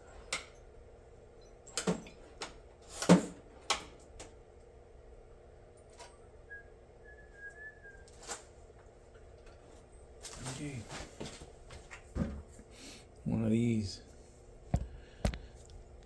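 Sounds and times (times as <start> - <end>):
low steady hum: 0.0 - 16.0
metal tooling clunks and clicks: 1.4 - 4.3
faint wavering whistled tone: 6.4 - 8.3.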